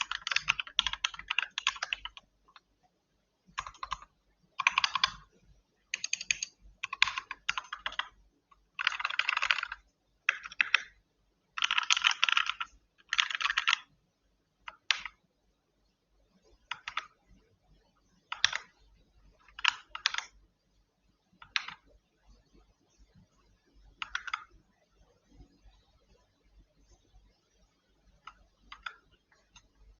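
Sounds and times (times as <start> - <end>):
keyboard typing clicks: 0.0 - 2.7, 3.5 - 5.3, 5.9 - 11.0, 11.6 - 13.9, 14.6 - 15.2, 16.7 - 17.2, 18.3 - 18.7, 19.4 - 20.4, 21.4 - 21.9, 24.0 - 24.6, 28.2 - 29.7.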